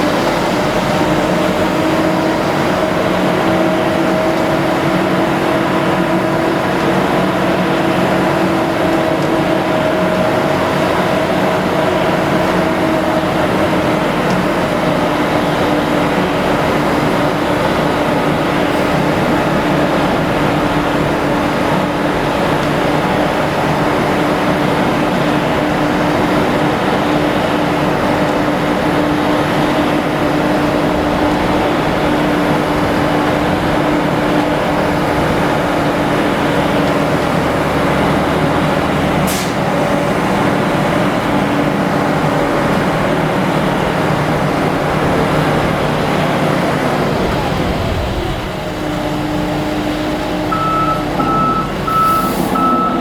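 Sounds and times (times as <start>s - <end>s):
truck diesel engine running: 0.0s - 53.0s
reversing alarm beeping: 50.5s - 53.0s.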